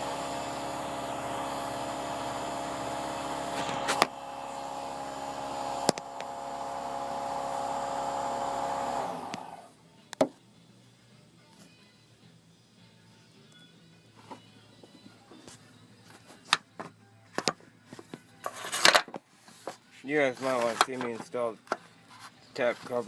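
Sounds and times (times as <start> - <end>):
small electric motor whirring: 0.0 - 9.7.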